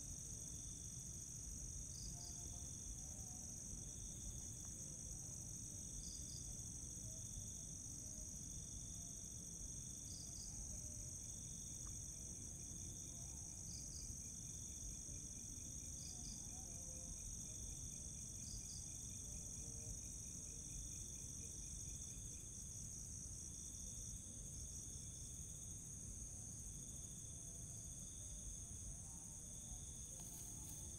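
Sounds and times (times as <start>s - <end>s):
crickets trilling: 8.7s - 30.9s.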